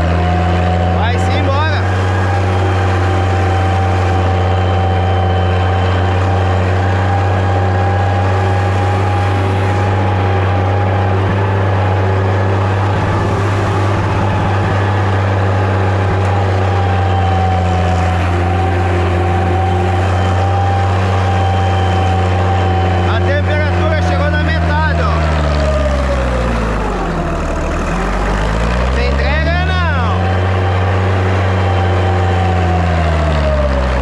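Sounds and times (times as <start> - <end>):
tractor diesel engine running: 0.0 - 34.0.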